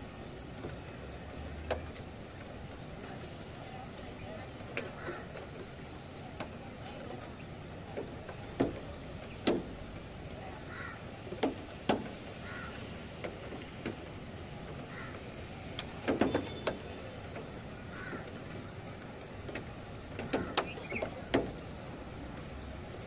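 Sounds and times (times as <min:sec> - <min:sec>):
steady rain: 0:00.0 - 0:23.0
wind: 0:00.0 - 0:23.0
sharp knocks or clicks: 0:08.0 - 0:09.8, 0:19.5 - 0:21.6.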